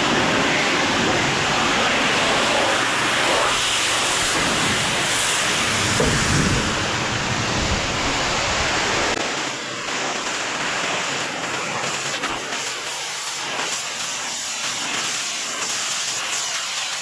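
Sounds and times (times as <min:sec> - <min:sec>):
pressure washer spraying: 0:00.0 - 0:17.0
low rumble: 0:04.0 - 0:09.2.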